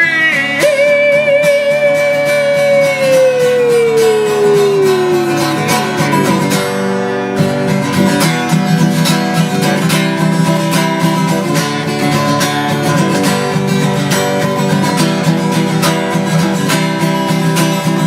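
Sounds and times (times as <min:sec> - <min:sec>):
sliding guitar note falling: 0:00.0 - 0:08.8
acoustic guitar strumming: 0:00.0 - 0:18.0.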